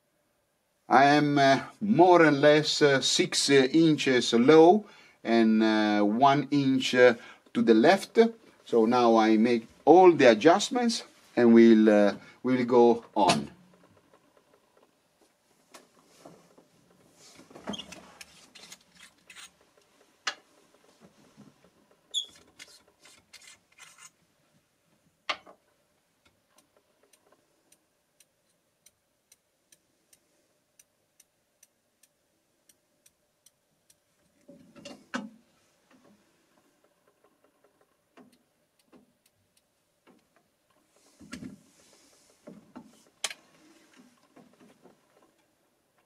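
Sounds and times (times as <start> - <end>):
brief rustle: 22.3 - 24.2.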